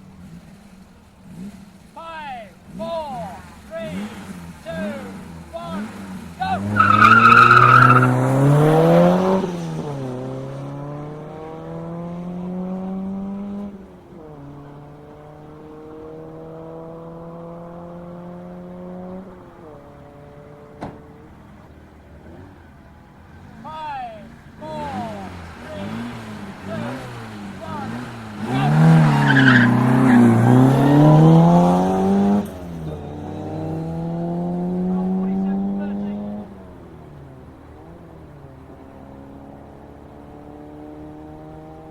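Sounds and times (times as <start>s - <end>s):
rally car engine revving: 0.0s - 41.9s
tyres squealing: 3.3s - 9.4s, 23.4s - 33.9s.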